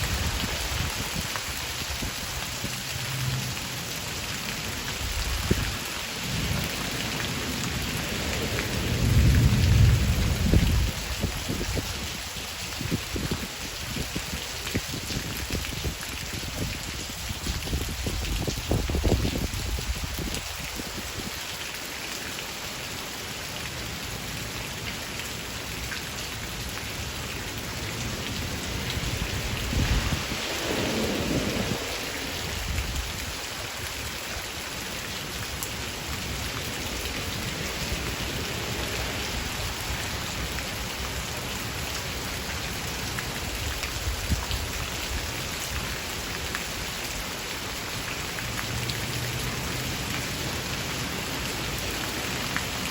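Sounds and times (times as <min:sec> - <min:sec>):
rain shower falling: 0:00.0 - 0:52.9
low rumble of thunder: 0:05.0 - 0:21.4, 0:28.1 - 0:33.9.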